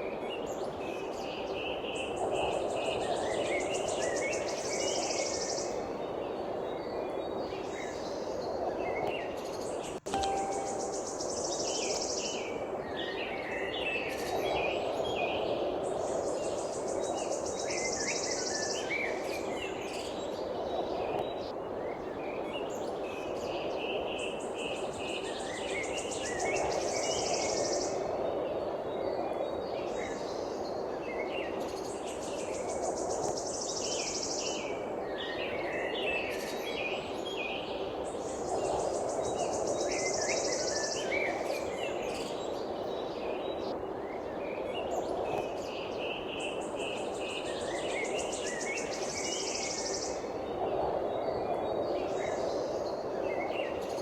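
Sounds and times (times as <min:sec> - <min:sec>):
songbirds chirping: 0:04.4 - 0:12.0.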